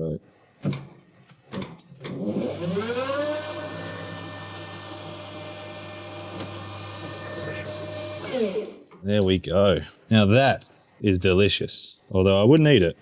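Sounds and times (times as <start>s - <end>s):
lathe motor whine: 2.1s - 8.9s.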